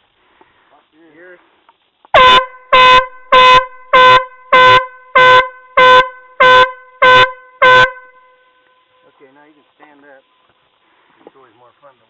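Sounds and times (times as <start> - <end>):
air horn blasts: 2.1 - 9.3.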